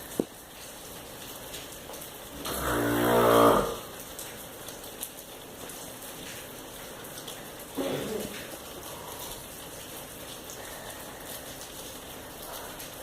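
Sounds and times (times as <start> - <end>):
steady rain hiss: 0.0 - 13.0
cow lowing: 2.4 - 3.9.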